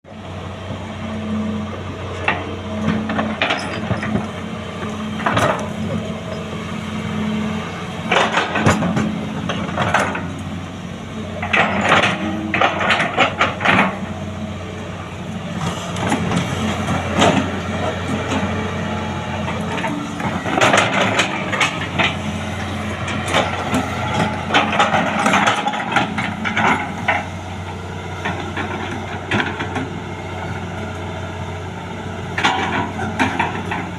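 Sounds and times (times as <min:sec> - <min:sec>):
excavator diesel engine running: 0:00.0 - 0:33.9
metallic clanks and knocks: 0:02.2 - 0:04.4, 0:11.4 - 0:14.0, 0:19.5 - 0:22.2, 0:23.0 - 0:27.3, 0:32.4 - 0:33.9.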